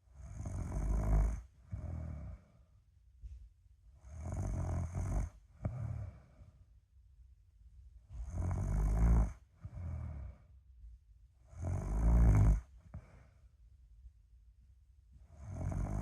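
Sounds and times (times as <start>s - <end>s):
person snoring: 0.2s - 2.5s, 4.0s - 6.3s, 8.2s - 10.4s, 11.5s - 13.1s, 15.4s - 16.0s.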